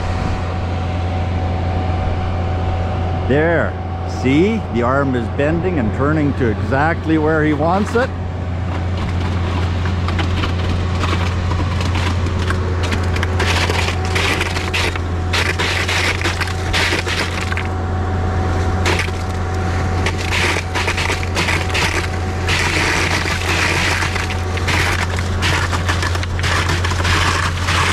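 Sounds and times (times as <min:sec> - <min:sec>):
truck engine drone: 0:00.0 - 0:27.9
clattering and crackling: 0:08.6 - 0:17.7, 0:20.0 - 0:27.9.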